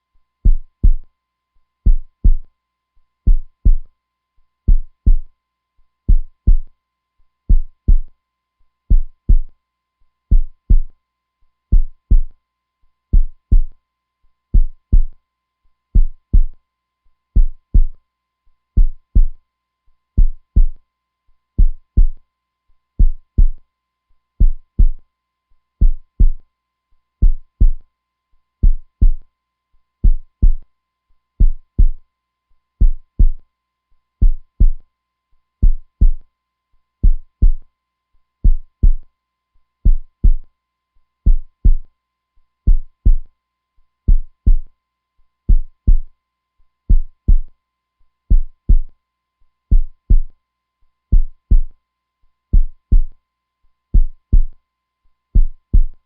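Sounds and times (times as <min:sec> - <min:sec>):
heartbeat lub-dub thumps: 0:00.4 - 0:01.1, 0:01.8 - 0:02.5, 0:03.3 - 0:03.9, 0:04.7 - 0:05.3, 0:06.1 - 0:06.7, 0:07.5 - 0:08.1, 0:08.9 - 0:09.5, 0:10.3 - 0:10.9, 0:11.7 - 0:12.3, 0:13.1 - 0:13.8, 0:14.6 - 0:15.2, 0:16.0 - 0:16.6, 0:17.4 - 0:18.0, 0:18.8 - 0:19.4, 0:20.2 - 0:20.8, 0:21.6 - 0:22.2, 0:23.0 - 0:23.6, 0:24.4 - 0:25.0, 0:25.8 - 0:26.4, 0:27.2 - 0:27.8, 0:28.6 - 0:29.2, 0:30.0 - 0:30.6, 0:31.4 - 0:32.0, 0:32.8 - 0:33.4, 0:34.2 - 0:34.8, 0:35.6 - 0:36.2, 0:37.0 - 0:37.6, 0:38.4 - 0:39.0, 0:39.8 - 0:40.4, 0:41.3 - 0:41.9, 0:42.7 - 0:43.3, 0:44.1 - 0:44.7, 0:45.5 - 0:46.1, 0:46.9 - 0:47.5, 0:48.3 - 0:48.9, 0:49.7 - 0:50.3, 0:51.1 - 0:51.7, 0:52.5 - 0:53.1, 0:54.0 - 0:54.5, 0:55.4 - 0:56.0.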